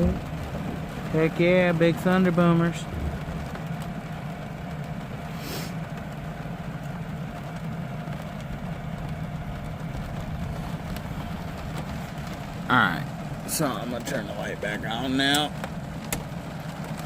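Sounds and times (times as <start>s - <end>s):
rain hiss: 0.0s - 17.0s
brief hiss: 5.3s - 5.8s.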